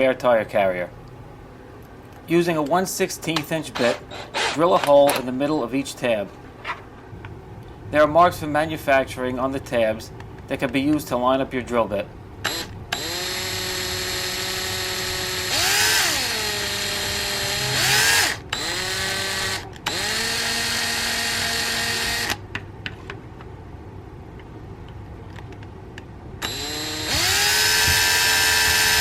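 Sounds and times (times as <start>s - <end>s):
electric drill motor whining: 12.4s - 22.4s, 26.4s - 29.0s.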